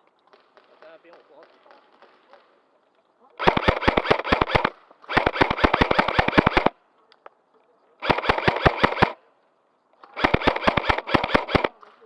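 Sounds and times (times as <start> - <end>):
airsoft gun firing bursts: 3.4 - 6.8, 8.0 - 9.3, 10.0 - 12.0.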